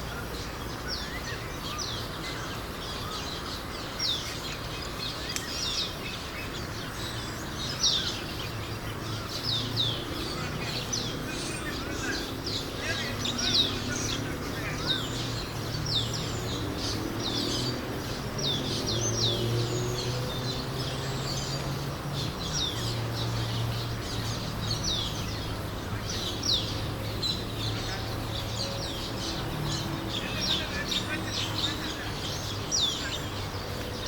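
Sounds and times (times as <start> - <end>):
birds chirping in chorus: 0.0 - 34.0.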